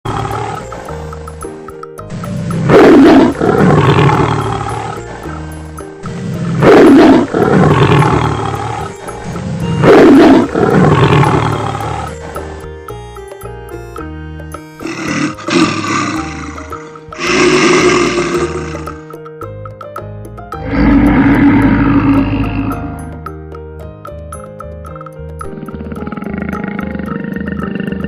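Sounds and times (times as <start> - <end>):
children's music: 0.1 - 28.0
big cat roaring: 2.6 - 5.1, 6.1 - 9.0, 9.8 - 12.2, 14.8 - 19.0, 20.6 - 23.0, 25.5 - 28.0.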